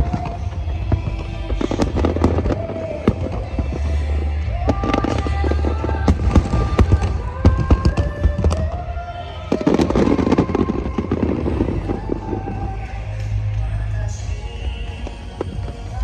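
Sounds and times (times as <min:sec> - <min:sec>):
fireworks bursting and crackling: 0:00.0 - 0:16.0
low rumble: 0:00.0 - 0:16.0
music on loudspeakers: 0:00.0 - 0:16.0.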